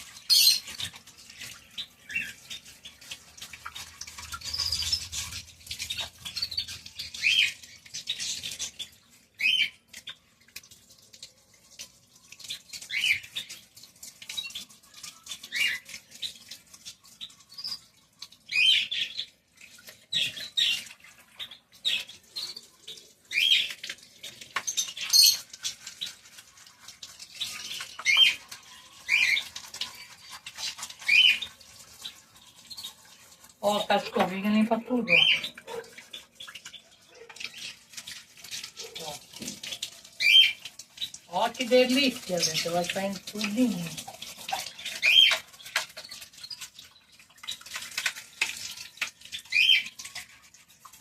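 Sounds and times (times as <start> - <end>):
small brush scrubbing: 24.2 - 34.6.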